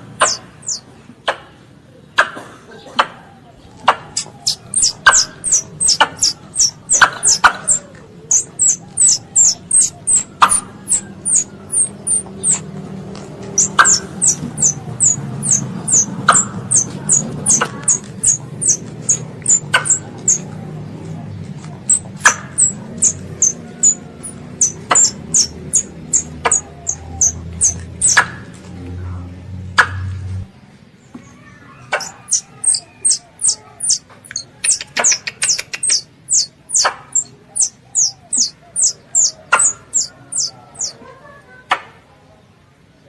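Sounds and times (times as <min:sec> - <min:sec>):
squirrel high-pitched chirps: 0:00.2 - 0:00.9, 0:03.8 - 0:12.7, 0:13.5 - 0:20.5, 0:21.8 - 0:28.5, 0:31.9 - 0:41.0
steady low hum: 0:04.1 - 0:30.6.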